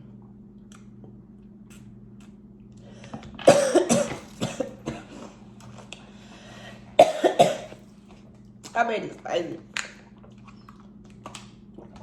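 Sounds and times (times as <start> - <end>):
low electrical hum: 0.0 - 12.0
woman coughing: 3.5 - 5.2, 7.0 - 7.8.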